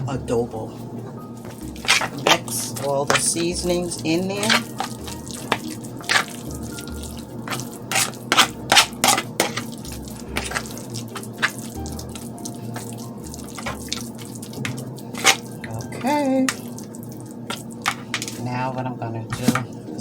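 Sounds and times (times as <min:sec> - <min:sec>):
wet mixture being stirred: 0:01.4 - 0:19.9.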